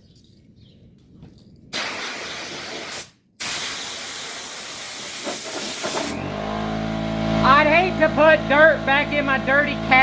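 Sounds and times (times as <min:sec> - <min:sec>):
compressed air blow gun hiss: 0:01.8 - 0:06.1.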